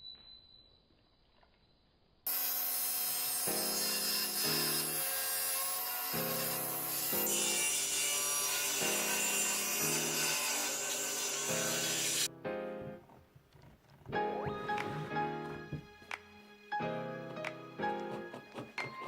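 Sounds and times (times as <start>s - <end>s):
hand saw cutting wood: 2.3s - 12.3s, 17.9s - 19.0s.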